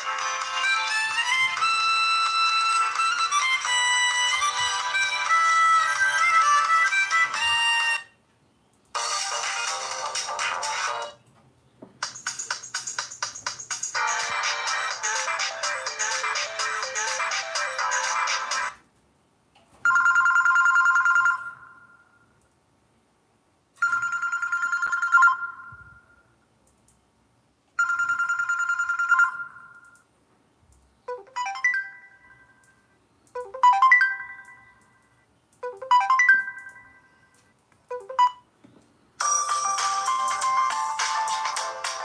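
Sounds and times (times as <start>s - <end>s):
busy ringtone tune: 0.0s - 8.1s, 9.0s - 11.2s, 12.0s - 18.8s, 19.9s - 22.2s, 23.8s - 26.3s, 27.8s - 30.0s, 31.1s - 32.8s, 33.4s - 38.5s, 39.2s - 42.0s
phone ringtone tune: 0.0s - 8.1s, 12.1s - 18.8s, 19.9s - 22.2s, 23.8s - 26.2s, 27.8s - 30.0s, 31.1s - 32.8s, 33.4s - 38.5s, 39.2s - 42.0s
telephone-style ring: 19.9s - 22.0s, 23.8s - 26.2s, 27.8s - 29.9s.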